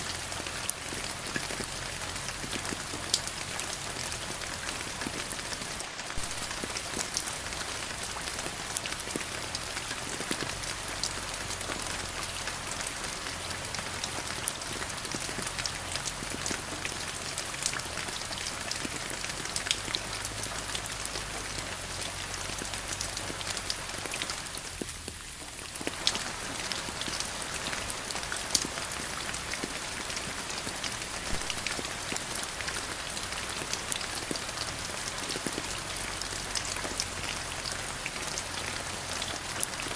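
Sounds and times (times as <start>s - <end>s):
raindrops ticking on a surface: 0.0s - 39.9s
steady rain falling: 0.0s - 39.9s.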